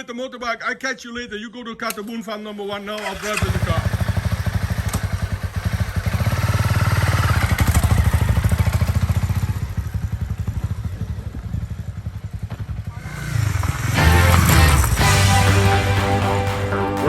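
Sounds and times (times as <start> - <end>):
motorbike engine putter: 1.9 - 6.2.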